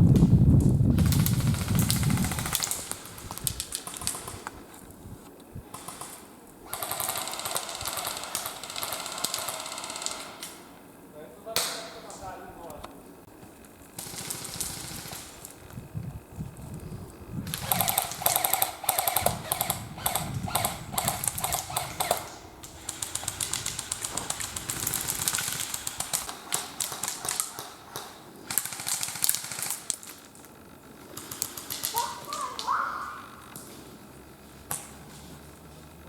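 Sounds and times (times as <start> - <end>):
airsoft guns firing bursts: 1.0 - 4.4, 5.7 - 10.6, 14.0 - 15.6, 17.5 - 30.2, 31.1 - 32.5.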